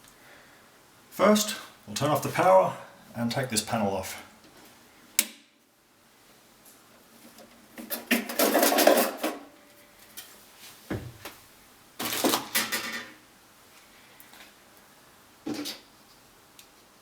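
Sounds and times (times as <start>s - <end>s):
dull thump: 10.9s - 11.3s.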